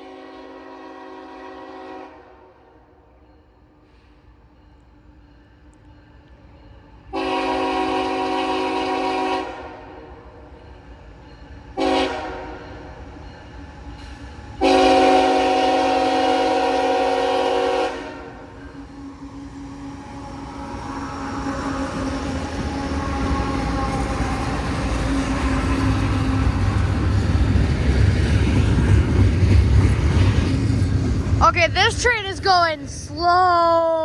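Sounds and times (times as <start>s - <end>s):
locomotive air horn blast: 0.0s - 2.6s, 7.1s - 10.0s, 11.8s - 12.6s, 14.6s - 18.5s, 22.6s - 24.3s
train rumbling: 0.0s - 34.0s.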